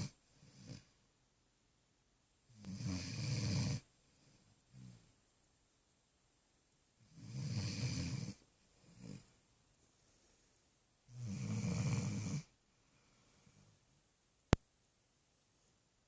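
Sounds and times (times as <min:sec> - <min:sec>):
puppy snoring: 0:00.0 - 0:01.0, 0:02.5 - 0:03.9, 0:07.0 - 0:09.4, 0:11.1 - 0:12.6.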